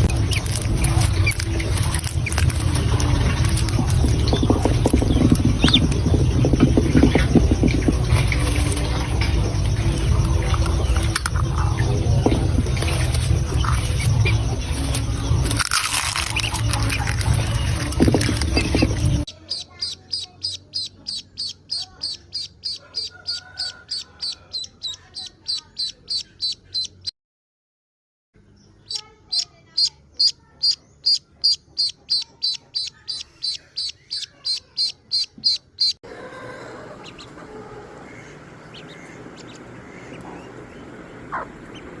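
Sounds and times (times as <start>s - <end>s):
duckling peeping: 0.0s - 15.5s, 16.3s - 27.1s, 28.7s - 36.0s, 37.0s - 42.0s
steady noisy background: 0.0s - 22.8s.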